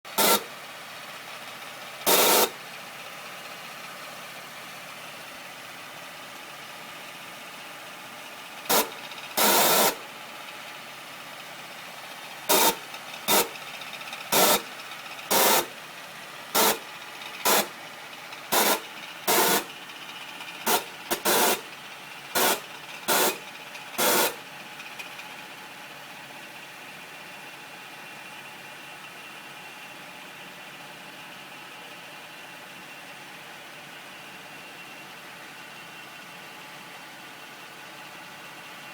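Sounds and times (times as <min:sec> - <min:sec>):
car engine running: 0:00.1 - 0:03.8, 0:08.2 - 0:25.4
short loud noisy bursts: 0:00.2 - 0:00.5, 0:02.1 - 0:02.6, 0:08.7 - 0:10.0.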